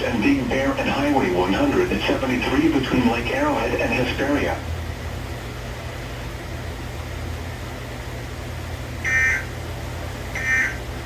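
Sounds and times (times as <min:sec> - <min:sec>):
steady low hum: 0:00.0 - 0:11.0
two-tone digital data bursts: 0:09.1 - 0:09.5, 0:10.4 - 0:10.8.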